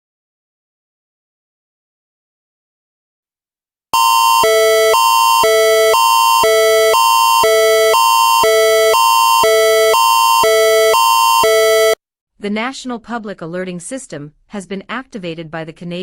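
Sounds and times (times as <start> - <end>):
alternating chord alert tone: 4.0 - 12.0.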